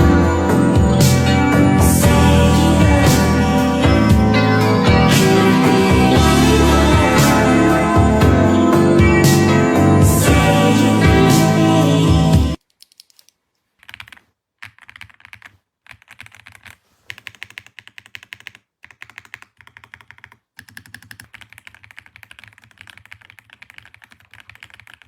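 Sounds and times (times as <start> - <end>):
fast mechanical keyboard typing: 12.7 - 25.0.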